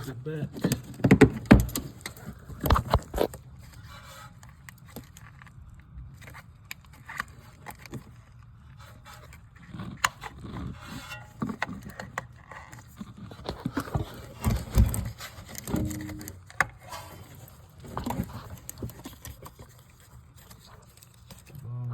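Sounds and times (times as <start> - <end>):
clicks and scrapes of handled parts: 0.0 - 21.6
heavy thumps: 13.8 - 16.4.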